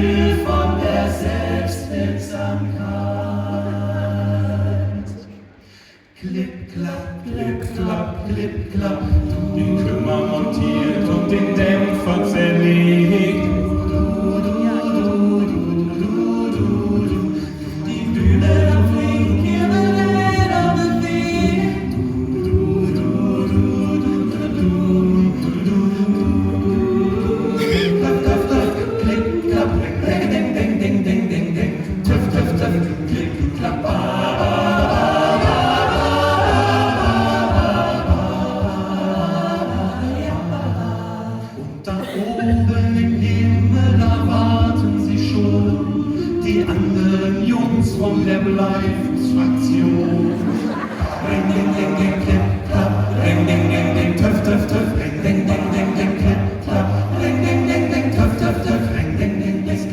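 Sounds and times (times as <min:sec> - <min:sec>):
vocal group singing in harmony: 0:00.0 - 0:59.9.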